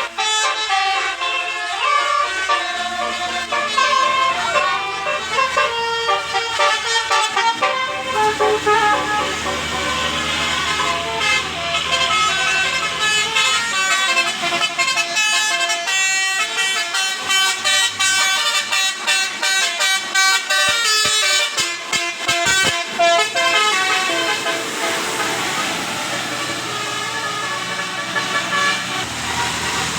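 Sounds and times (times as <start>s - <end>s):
bus musical air horn tune: 0.0s - 29.9s
low engine hum: 1.8s - 15.1s, 22.5s - 29.9s.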